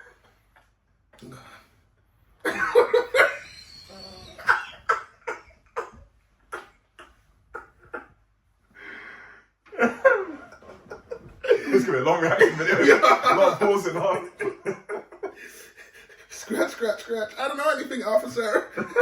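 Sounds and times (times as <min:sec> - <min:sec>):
person coughing: 0:02.4 - 0:03.1.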